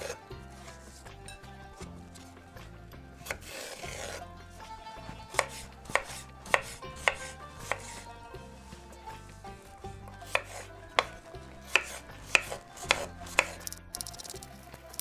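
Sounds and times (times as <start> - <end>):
knife chopping on cutting board: 3.2 - 4.2, 5.4 - 8.1, 10.3 - 14.4.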